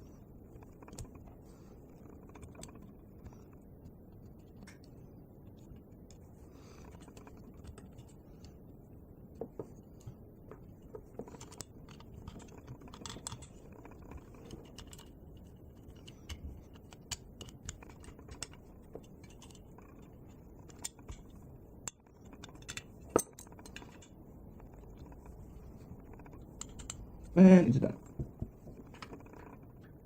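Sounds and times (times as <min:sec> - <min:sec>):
clicks and taps of metal parts: 0:09.4 - 0:25.3, 0:26.0 - 0:27.4.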